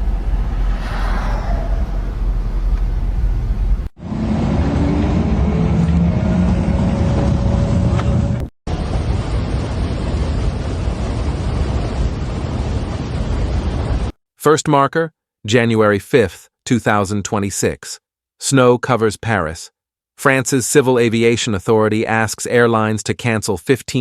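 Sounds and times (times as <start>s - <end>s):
faint engine pitch rising: 0.0s - 8.4s
road vehicle noise: 0.0s - 8.5s.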